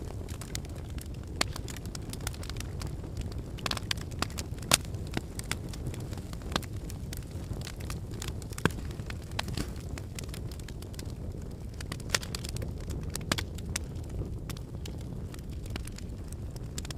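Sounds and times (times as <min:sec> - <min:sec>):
fire low rumble: 0:00.0 - 0:16.9
fire pops and snaps: 0:00.0 - 0:16.9.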